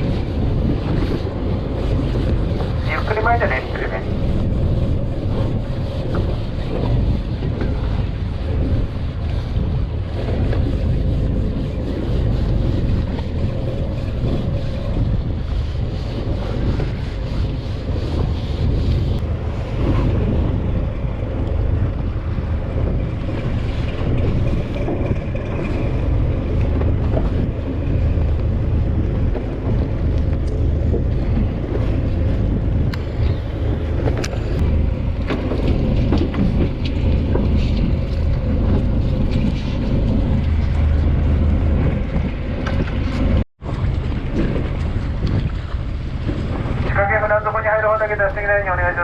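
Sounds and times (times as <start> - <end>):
boat engine running: 0.0 - 49.0
wind noise on microphone: 0.0 - 49.0.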